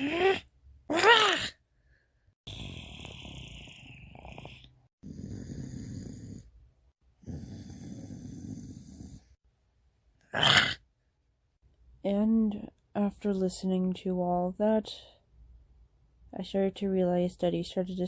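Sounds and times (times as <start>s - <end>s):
person growling like an animal: 2.5s - 6.5s, 7.2s - 9.3s, 10.3s - 10.8s.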